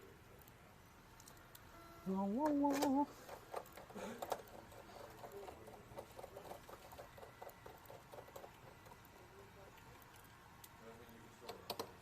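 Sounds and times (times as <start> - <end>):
small clicks and taps: 2.4 - 12.0.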